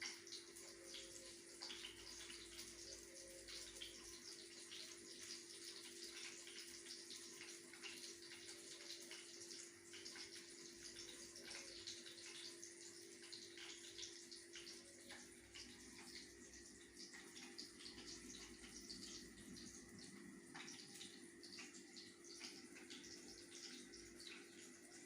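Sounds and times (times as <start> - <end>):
faint running water: 0.0 - 25.0.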